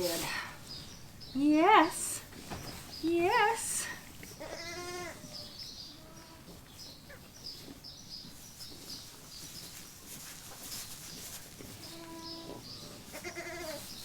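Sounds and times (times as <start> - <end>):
small bird chirping: 0.0 - 14.0
faint lamb bleat: 4.4 - 5.3, 11.9 - 13.8.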